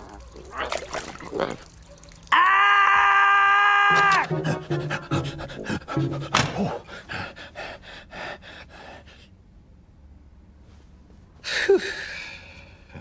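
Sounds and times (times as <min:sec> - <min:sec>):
rapid panting breaths: 0:04.2 - 0:09.3.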